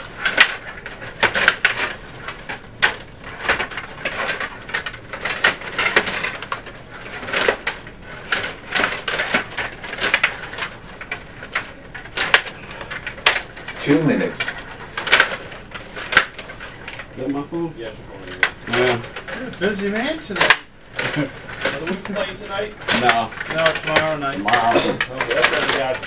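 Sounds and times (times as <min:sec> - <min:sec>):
plastic clacking and rattling: 0:00.0 - 0:17.4, 0:18.2 - 0:26.0.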